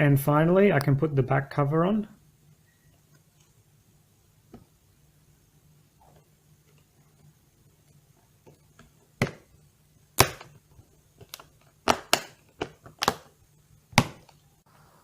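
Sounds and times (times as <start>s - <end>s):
plastic clips snapping into place: 11.2s - 13.3s.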